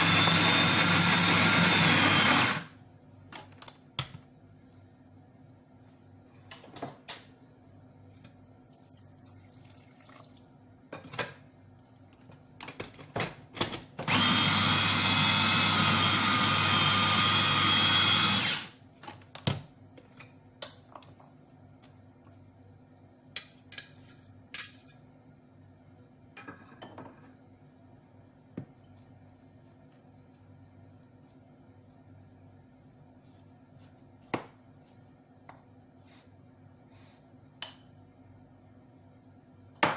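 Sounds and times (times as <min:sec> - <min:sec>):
electric blender grinding: 0:00.0 - 0:02.7, 0:14.0 - 0:18.7.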